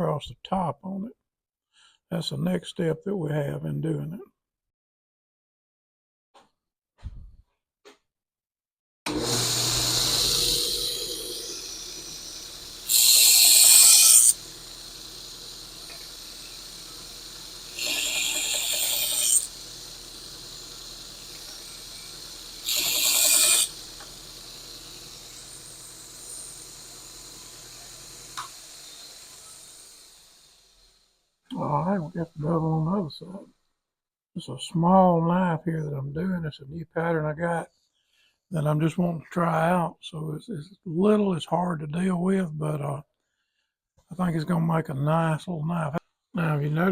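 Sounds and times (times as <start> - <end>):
belt sander running: 9.1 - 31.0
steel grinding on sander belt: 9.1 - 31.1.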